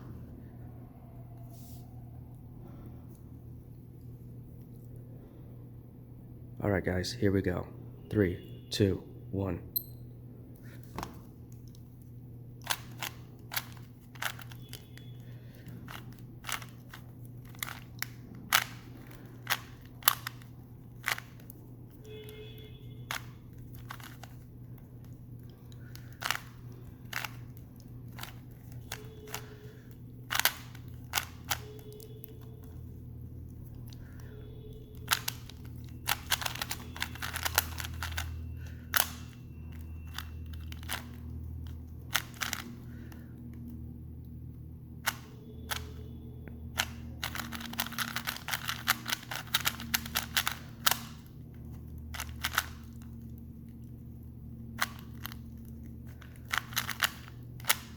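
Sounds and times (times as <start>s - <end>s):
plastic puzzle cube clicking: 12.6s - 14.8s, 15.6s - 21.6s, 23.1s - 24.4s, 25.0s - 29.6s, 30.3s - 32.8s, 34.9s - 42.9s, 45.1s - 46.0s, 46.8s - 51.5s, 52.1s - 53.2s, 54.8s - 57.9s.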